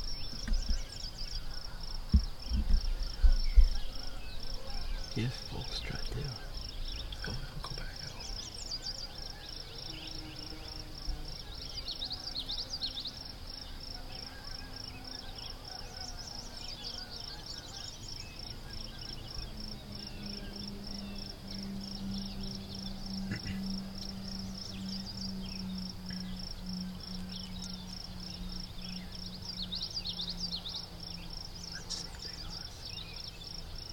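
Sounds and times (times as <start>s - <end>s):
high pulsing insect trill: 0.0s - 33.9s
low steady hum: 0.0s - 33.9s
small birds chirping: 0.0s - 33.9s.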